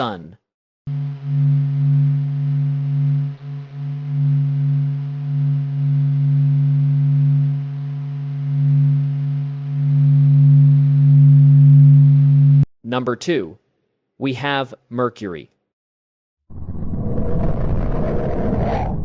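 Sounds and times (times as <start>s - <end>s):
deep droning hum: 0.9s - 12.7s.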